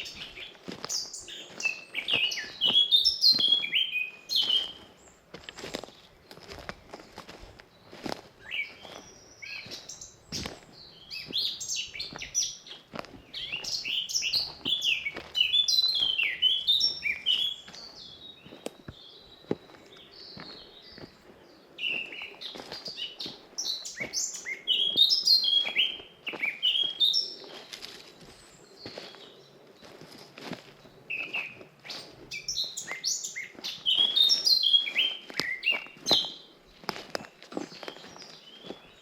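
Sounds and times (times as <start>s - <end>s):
footsteps on woodland path: 0.0s - 39.0s
songbirds singing: 0.0s - 39.0s.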